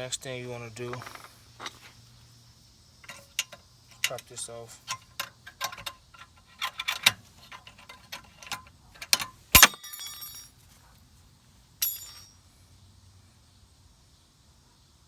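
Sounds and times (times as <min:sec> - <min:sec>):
metal tools clicking and tapping: 0:00.9 - 0:01.9, 0:03.0 - 0:10.5, 0:11.8 - 0:12.3
sharp metallic clanks: 0:03.0 - 0:10.6, 0:11.8 - 0:12.4.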